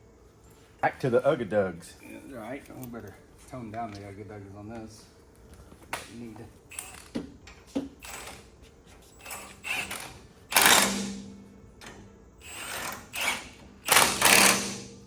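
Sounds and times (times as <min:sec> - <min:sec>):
impact wrench bursts: 0:06.7 - 0:07.1, 0:08.0 - 0:08.4, 0:09.2 - 0:11.2, 0:12.4 - 0:15.0.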